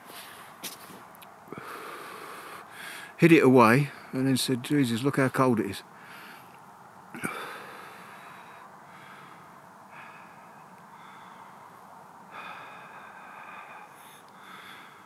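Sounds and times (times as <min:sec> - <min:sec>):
man exhaling heavily: 0:01.5 - 0:03.2, 0:07.1 - 0:11.6, 0:12.3 - 0:15.0.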